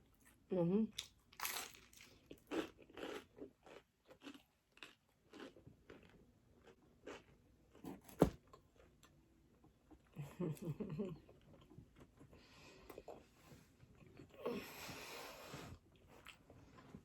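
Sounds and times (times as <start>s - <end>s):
person chewing crunchy food: 1.0s - 9.2s.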